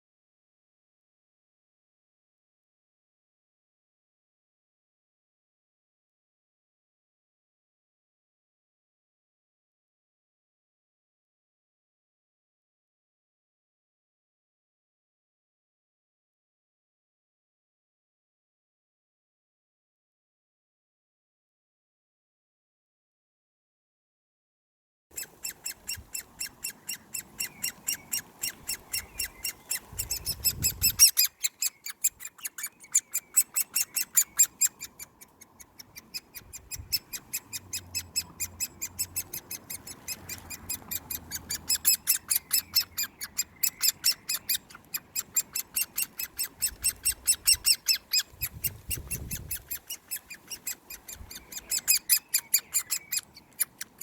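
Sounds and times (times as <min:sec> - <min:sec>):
woodpecker chick begging calls: 0:25.2 - 0:54.0.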